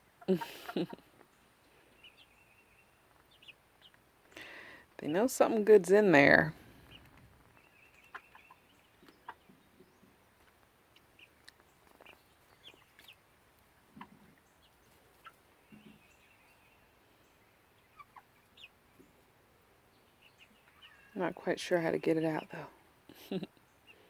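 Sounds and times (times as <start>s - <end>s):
hens peeping: 0.0s - 24.0s
hens clucking softly: 6.7s - 16.5s, 17.4s - 19.4s.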